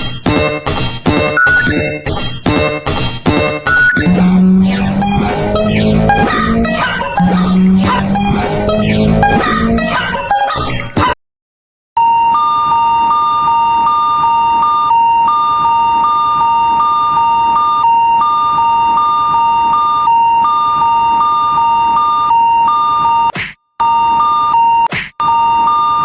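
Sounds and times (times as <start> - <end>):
railroad crossing alarm ringing: 23.8 - 26.0.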